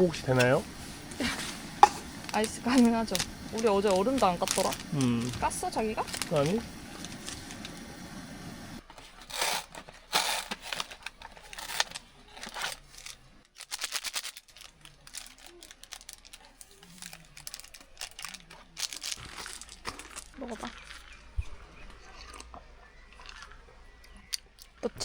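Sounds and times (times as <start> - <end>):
plastic packaging crinkling: 0.2 - 8.2, 8.8 - 24.8.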